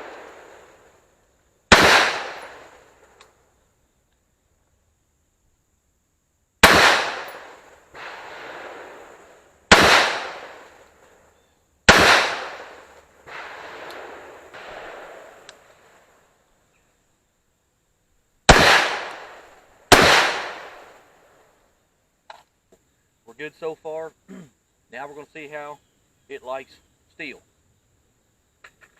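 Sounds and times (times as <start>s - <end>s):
rifle shots: 1.7s - 3.2s, 6.6s - 10.9s, 11.9s - 16.0s, 18.5s - 21.1s.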